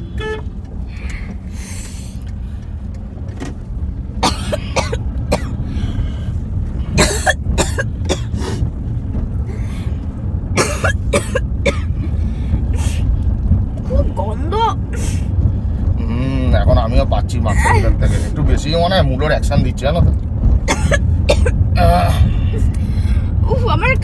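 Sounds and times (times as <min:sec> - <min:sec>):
car rumble: 0:00.0 - 0:24.0
person coughing: 0:04.2 - 0:05.6, 0:07.0 - 0:08.6, 0:10.6 - 0:12.0, 0:20.7 - 0:21.6.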